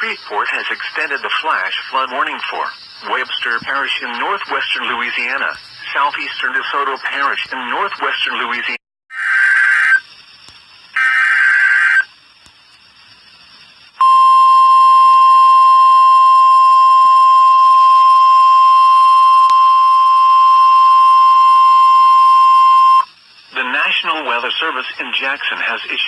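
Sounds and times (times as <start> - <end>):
data burst tones: 10.9 - 12.2, 14.0 - 24.1
loud steady alarm tone: 11.0 - 12.1, 14.0 - 23.9.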